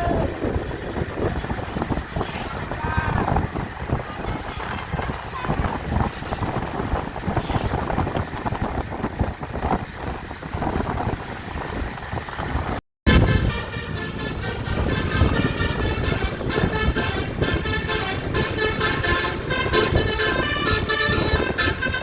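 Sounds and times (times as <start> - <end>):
roadside noise: 0.0 - 22.0
bus horn playing a tune: 13.1 - 22.0.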